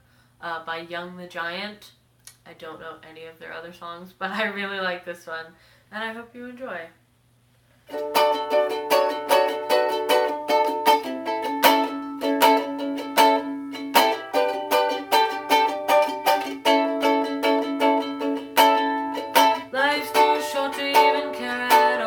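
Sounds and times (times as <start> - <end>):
strummed string instrument: 7.9 - 22.0.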